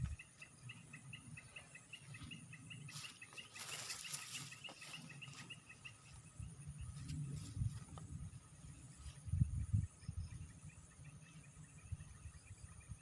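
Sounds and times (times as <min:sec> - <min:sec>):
faint low rumble: 0:04.8 - 0:13.0.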